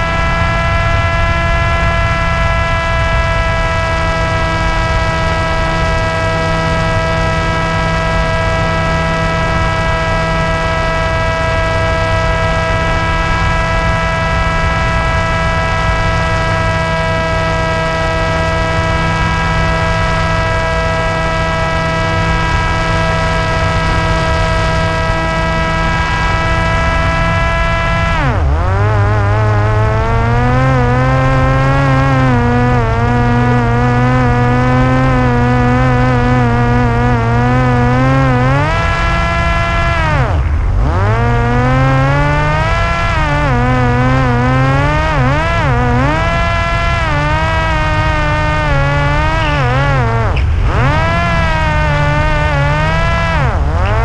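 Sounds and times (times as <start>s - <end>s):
electric motor and propeller whine: 0.0s - 54.0s
wind rush: 40.0s - 41.6s, 49.4s - 53.0s.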